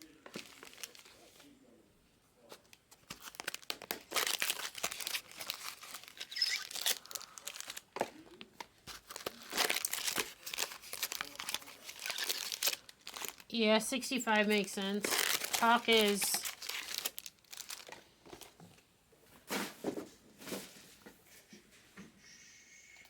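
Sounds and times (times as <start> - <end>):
packaging crinkling: 0.3 - 1.4, 2.8 - 18.6.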